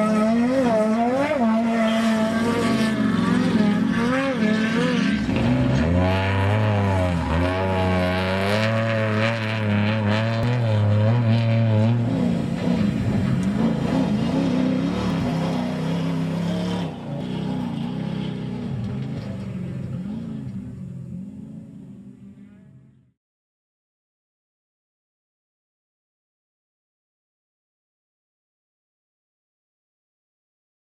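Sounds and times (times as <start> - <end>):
truck engine revving: 0.0 - 22.0.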